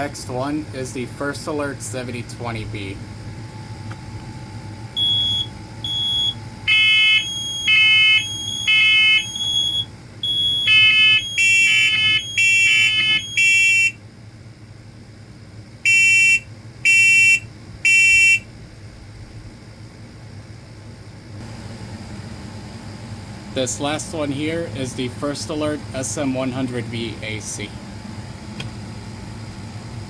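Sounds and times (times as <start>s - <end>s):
smoke alarms beeping: 5.0s - 14.0s, 15.8s - 18.5s.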